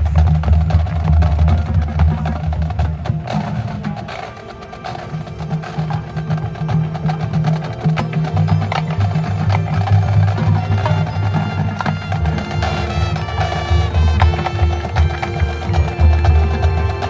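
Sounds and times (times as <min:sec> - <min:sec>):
sharp percussion strikes: 0:00.0 - 0:17.0
low brass sustained notes: 0:03.0 - 0:17.0
bell-like tones: 0:04.0 - 0:17.0.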